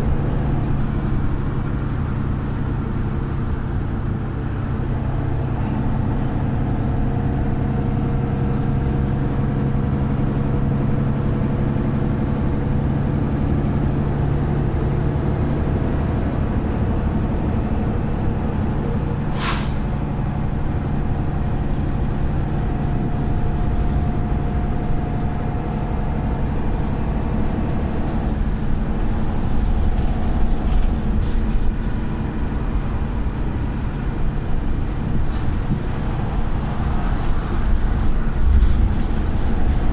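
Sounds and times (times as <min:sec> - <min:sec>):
bus diesel engine running: 0:00.0 - 0:39.9
air brake hiss: 0:19.3 - 0:20.0.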